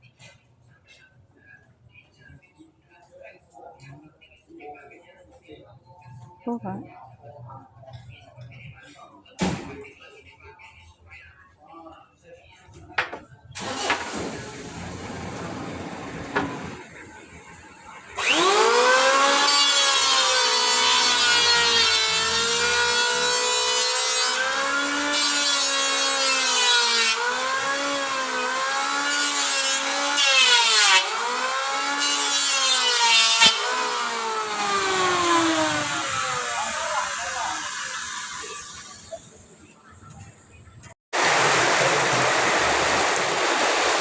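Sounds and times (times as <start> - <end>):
power tool motor whining: 13.6 - 16.8, 18.2 - 39.3.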